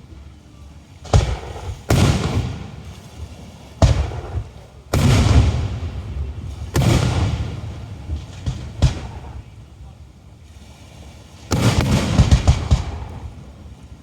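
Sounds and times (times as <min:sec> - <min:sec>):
fireworks booming: 0:01.0 - 0:10.7, 0:11.3 - 0:14.0.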